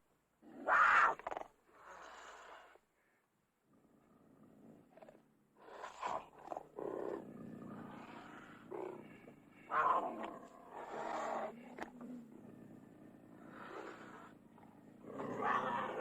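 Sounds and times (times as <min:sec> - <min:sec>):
cougar snarling: 0:03.7 - 0:16.0.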